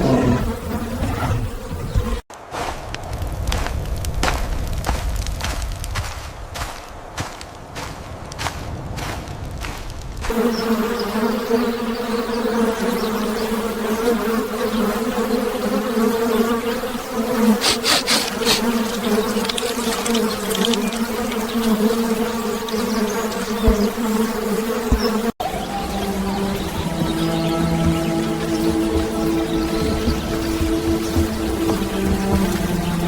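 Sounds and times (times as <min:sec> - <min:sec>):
swarm of bees buzzing: 0:00.0 - 0:02.3, 0:10.3 - 0:33.0.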